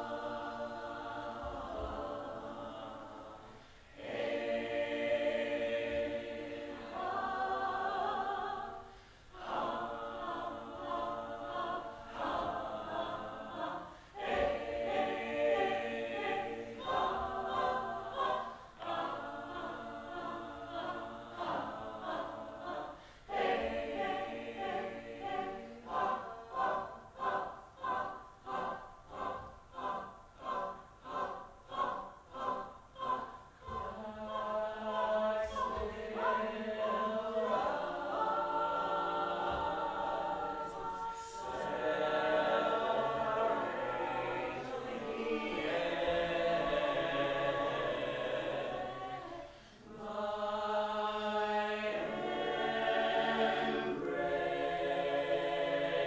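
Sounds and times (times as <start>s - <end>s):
choir singing a cappella: 0.0s - 56.0s.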